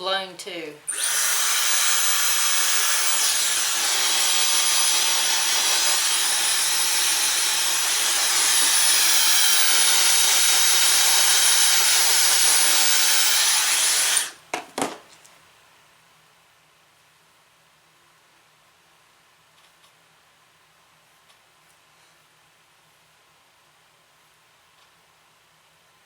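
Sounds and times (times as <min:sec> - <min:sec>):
hair dryer running: 0:00.9 - 0:14.4
hair dryer handling knocks: 0:14.5 - 0:15.1.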